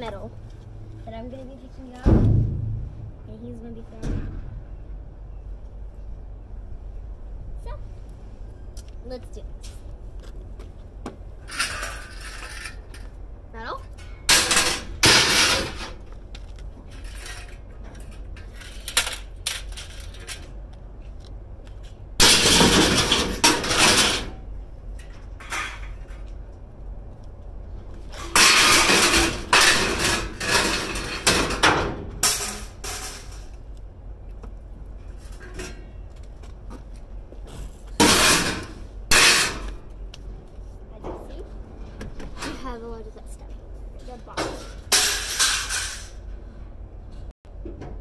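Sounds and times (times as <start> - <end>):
scrap metal clanging: 11.4 - 13.1, 13.9 - 16.1, 22.2 - 24.4, 28.1 - 33.6, 35.0 - 36.1, 37.6 - 39.9, 44.1 - 46.5.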